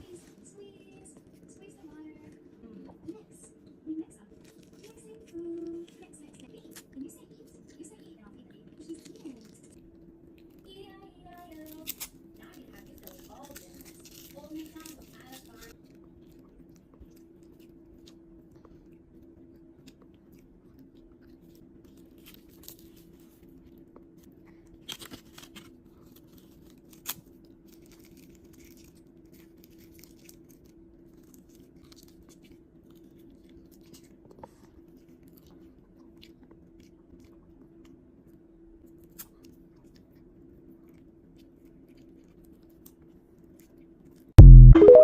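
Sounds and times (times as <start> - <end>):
chewing and crunching: 0.0 - 44.4.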